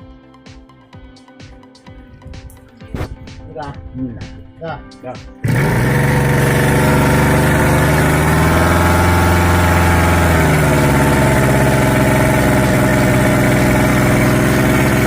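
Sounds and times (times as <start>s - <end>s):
brush cutter engine idling: 5.4s - 15.0s.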